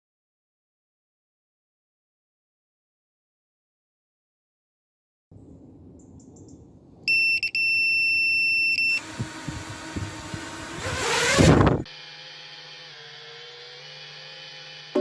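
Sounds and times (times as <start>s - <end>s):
electronic beep: 7.1s - 9.0s.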